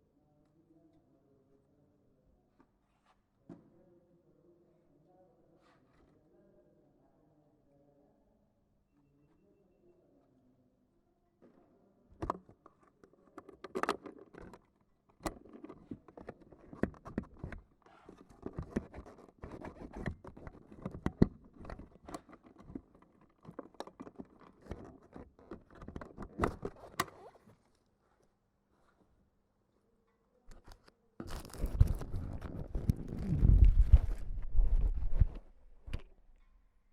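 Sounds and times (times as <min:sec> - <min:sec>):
sharp clicks and knocks: 0:12.2 - 0:27.2
microphone handling rustling: 0:13.4 - 0:27.7, 0:30.5 - 0:36.3.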